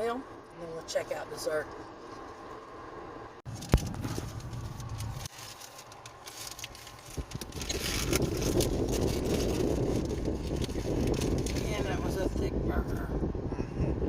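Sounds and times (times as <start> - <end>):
car rumbling: 0.0 - 14.0
handling clicks and scrapes: 3.5 - 11.8
rustling: 3.5 - 12.0.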